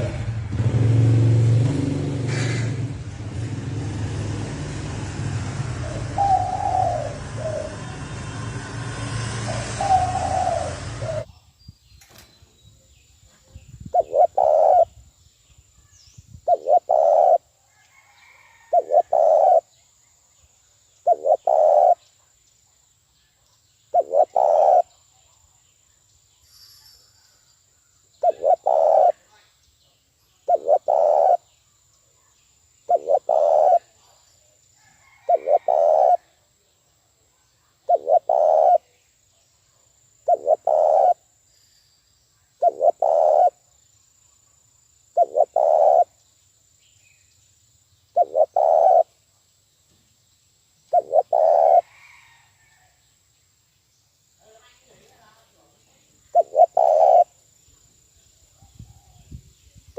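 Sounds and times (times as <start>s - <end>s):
dove cooing: 5.8s - 8.0s, 9.5s - 11.3s, 13.9s - 15.0s, 16.5s - 17.5s, 18.3s - 19.7s, 21.0s - 22.0s, 23.9s - 24.9s, 28.2s - 29.3s, 30.4s - 31.4s, 32.9s - 34.0s, 35.0s - 36.4s, 37.8s - 38.9s, 40.2s - 41.2s, 42.6s - 43.6s, 45.2s - 46.2s, 48.2s - 49.1s, 50.9s - 52.4s, 56.3s - 57.3s
loud burst of sound: 7.1s - 11.1s.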